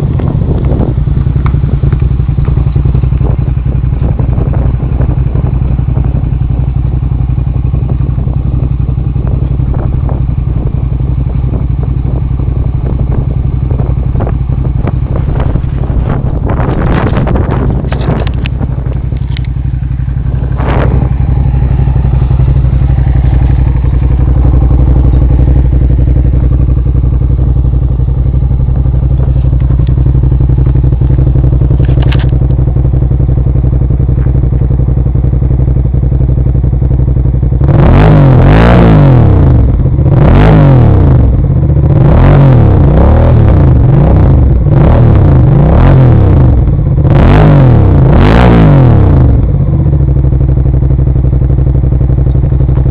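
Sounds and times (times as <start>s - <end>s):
motorcycle engine running: 0.0s - 52.9s
engine revving: 12.8s - 36.2s, 36.9s - 50.6s.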